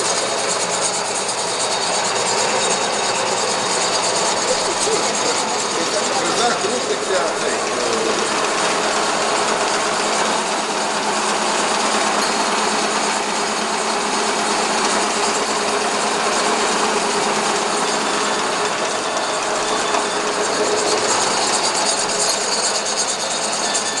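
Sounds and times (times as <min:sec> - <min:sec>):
gear machine clattering: 0:00.0 - 0:10.7, 0:17.0 - 0:24.0.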